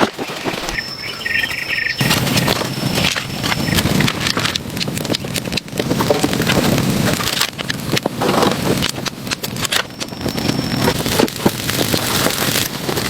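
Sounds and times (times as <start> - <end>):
crunching and cracking: 0.0 - 13.0
thin high tone: 0.6 - 4.1.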